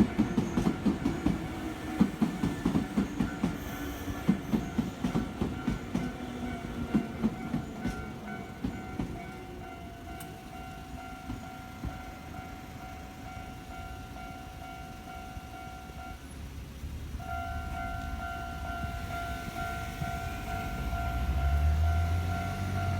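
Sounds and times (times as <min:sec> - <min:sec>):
train wheels clattering over rails: 0:00.0 - 0:13.7
electronic crossing warning bell: 0:00.0 - 0:16.6, 0:17.2 - 0:22.9.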